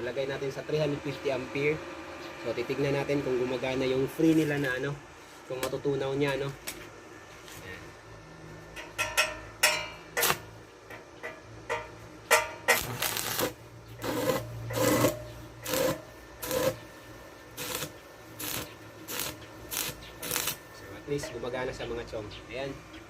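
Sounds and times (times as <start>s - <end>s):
welding arc crackling: 10.2s - 10.6s, 12.3s - 21.2s.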